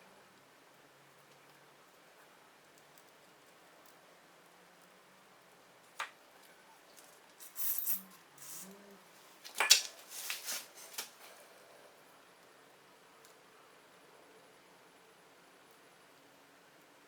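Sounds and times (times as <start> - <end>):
hissy scraping: 7.4 - 11.6.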